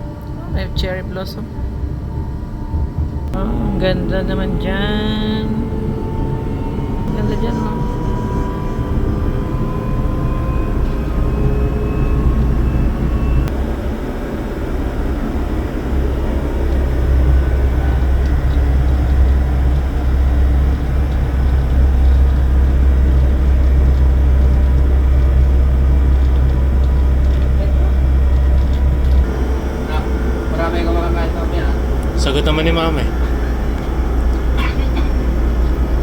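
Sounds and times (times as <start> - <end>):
electric train rumbling: 0.0 - 36.0
faint rising whine: 0.0 - 36.0.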